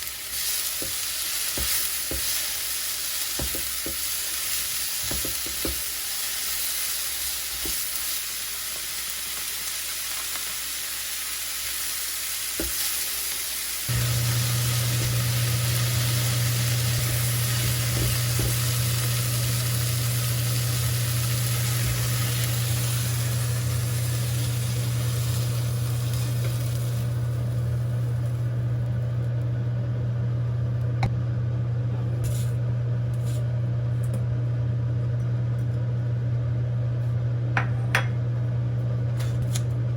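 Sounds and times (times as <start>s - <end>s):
food sizzling in a pan: 0.0s - 28.7s
appliance motor hum: 12.6s - 39.9s.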